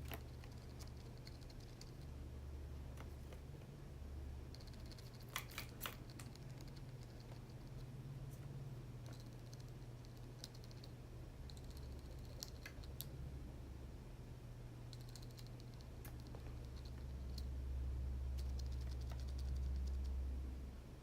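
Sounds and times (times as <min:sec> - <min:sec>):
keyboard typing: 0:00.0 - 0:02.1, 0:04.5 - 0:07.9, 0:09.0 - 0:13.1, 0:14.9 - 0:17.5, 0:18.4 - 0:20.2
low steady hum: 0:00.0 - 0:21.0.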